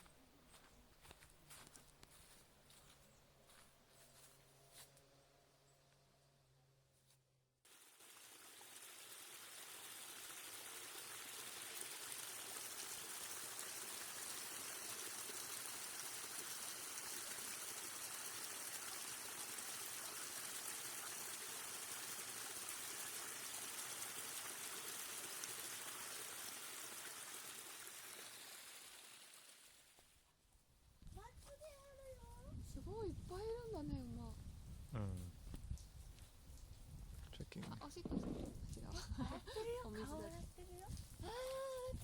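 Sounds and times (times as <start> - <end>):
running water rushing: 7.7 - 30.0.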